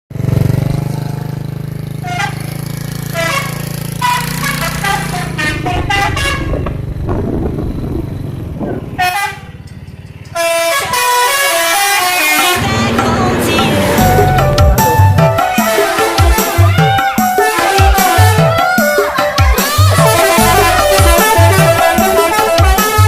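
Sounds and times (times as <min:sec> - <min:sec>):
engine running: 0:00.1 - 0:16.8, 0:17.4 - 0:23.0
musical air horn playing a tune: 0:02.0 - 0:06.7, 0:09.0 - 0:09.5, 0:10.3 - 0:12.9, 0:14.0 - 0:23.0.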